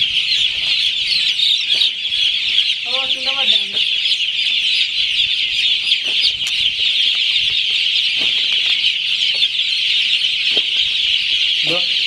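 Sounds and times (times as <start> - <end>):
chickens peeping and chirping: 0.0 - 12.0.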